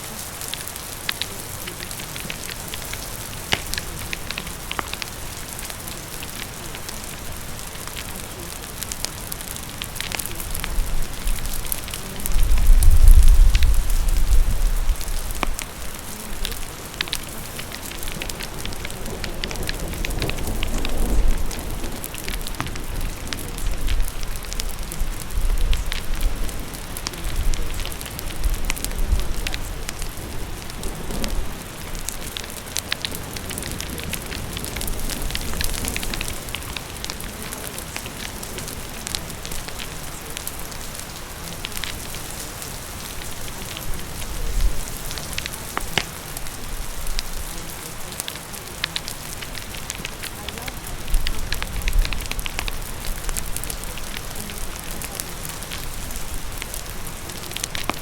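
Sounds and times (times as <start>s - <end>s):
fire crackling: 0.0s - 58.0s
steady rain: 0.0s - 58.0s.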